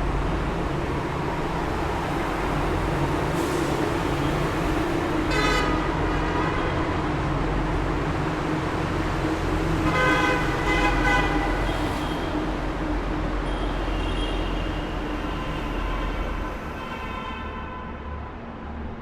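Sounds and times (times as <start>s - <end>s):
traffic rumbling in tunnel: 0.0s - 19.0s
vehicle horn honking: 5.3s - 5.8s.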